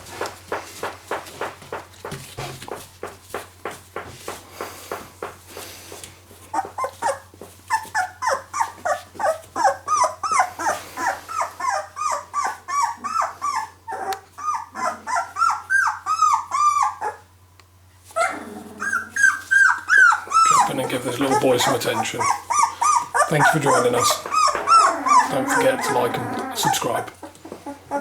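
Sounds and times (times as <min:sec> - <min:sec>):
puppy squeaking and whimpering: 0:06.5 - 0:17.3, 0:18.1 - 0:28.0.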